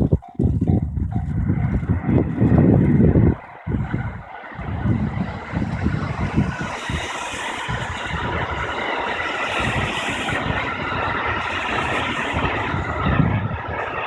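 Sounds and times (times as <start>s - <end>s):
level crossing warning bell: 0.0s - 2.1s
train running over rail joints: 0.0s - 14.0s.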